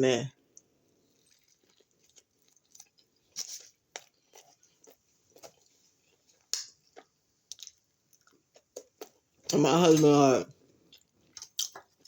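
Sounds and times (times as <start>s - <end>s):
person chewing food: 0.5s - 12.0s.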